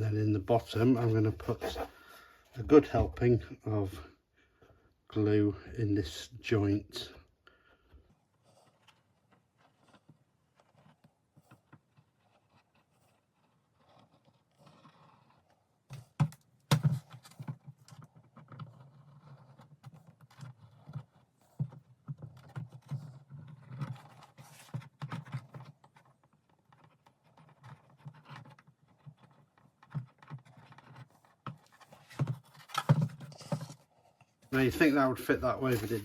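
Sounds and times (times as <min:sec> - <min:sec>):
small taps clicks and scrapes: 0:07.8 - 0:36.0.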